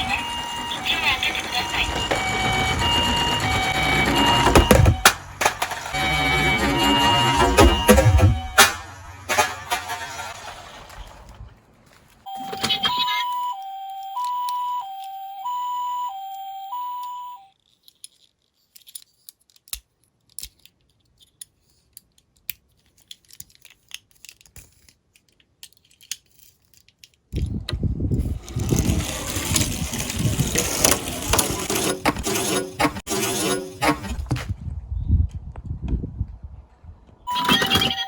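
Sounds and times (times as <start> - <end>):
toy electronic two-tone siren: 0.0 - 5.1, 5.9 - 8.7, 12.3 - 17.5, 37.3 - 38.0
loud clattering rattle: 7.5 - 11.3.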